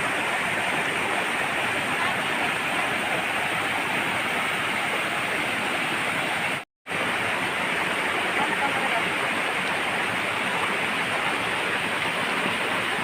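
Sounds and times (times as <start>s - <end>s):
water rushing over rocks: 0.0s - 13.0s.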